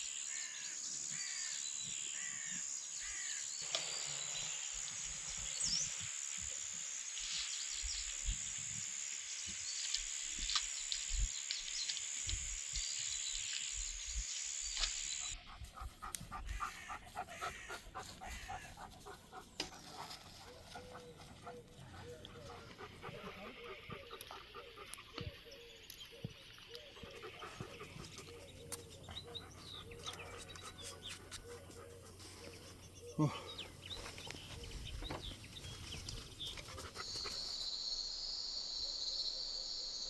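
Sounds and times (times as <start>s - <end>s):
high insect drone: 0.0s - 21.0s, 36.7s - 40.0s
birds chirping: 14.9s - 40.0s
dog panting: 15.4s - 25.1s, 27.0s - 32.8s, 36.4s - 37.6s.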